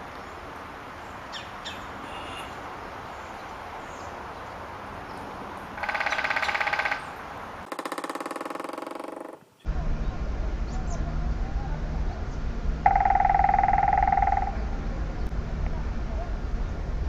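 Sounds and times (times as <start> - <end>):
outdoor background hiss: 0.0 - 17.0
woodpecker drumming: 5.8 - 10.0, 12.8 - 15.4.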